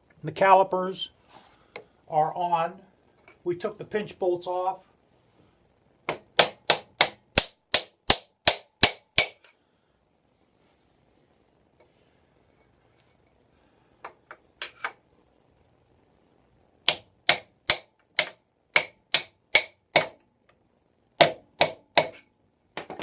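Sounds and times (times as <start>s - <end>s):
hammer striking metal axle: 6.1s - 9.5s, 16.9s - 20.2s.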